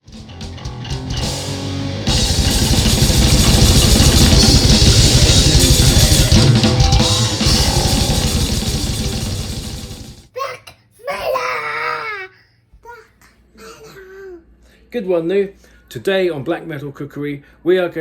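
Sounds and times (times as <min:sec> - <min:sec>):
distorted guitars: 0:00.0 - 0:10.3
fast drums: 0:00.0 - 0:10.3
heavy metal music: 0:00.0 - 0:10.3.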